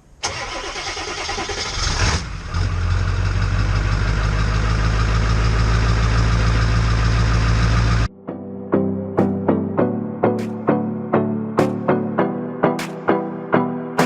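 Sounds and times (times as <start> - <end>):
diesel engine cranking: 0.2 - 8.1
diesel engine idling: 2.4 - 8.1.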